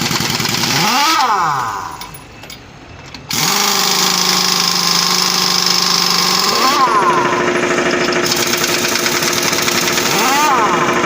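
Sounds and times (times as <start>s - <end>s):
power tool running: 3.3s - 11.0s.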